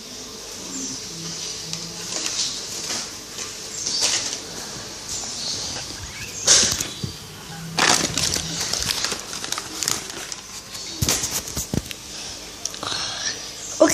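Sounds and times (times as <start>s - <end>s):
plastic bag crinkling: 5.7s - 12.1s.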